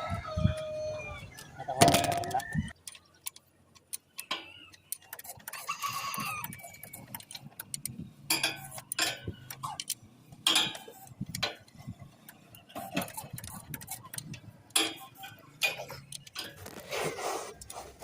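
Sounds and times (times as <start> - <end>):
hand tools clicking on metal: 2.7 - 16.7.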